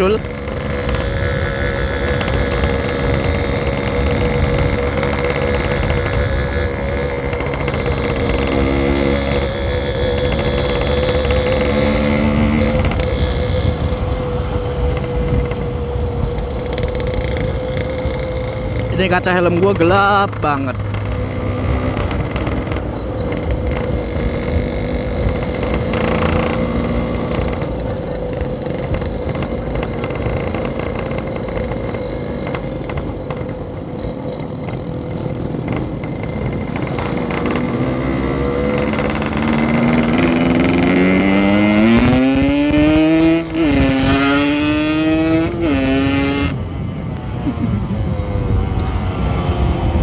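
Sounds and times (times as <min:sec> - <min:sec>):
wind noise on microphone: 0:00.0 - 0:18.9, 0:35.4 - 0:50.0
two-stroke motorcycle engine: 0:00.0 - 0:50.0.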